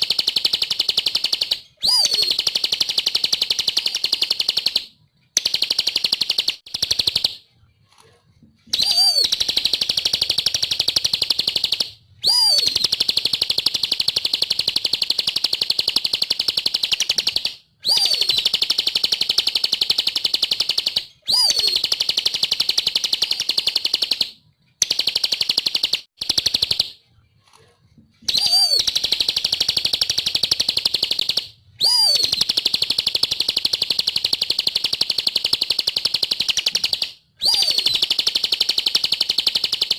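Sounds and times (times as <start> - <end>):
bird singing buzzy trill: 0.0 - 4.8, 8.7 - 15.0, 16.6 - 24.2, 28.3 - 39.9.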